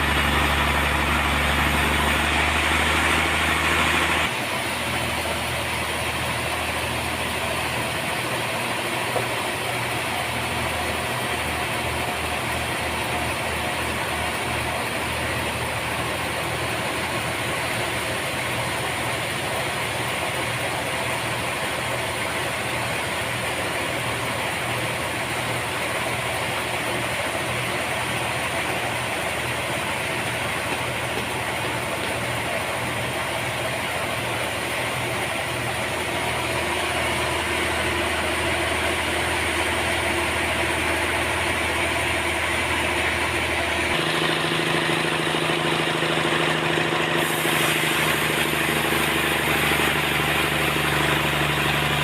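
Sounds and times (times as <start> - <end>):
sawmill machinery running: 0.0 - 52.0.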